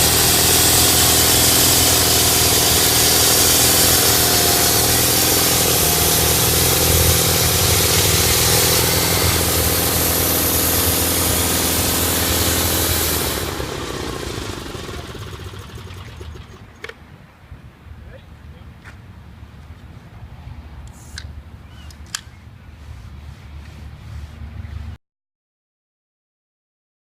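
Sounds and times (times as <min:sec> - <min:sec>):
saw blade cutting log: 0:00.0 - 0:16.7, 0:22.1 - 0:25.0
sawmill engine running: 0:00.0 - 0:16.8.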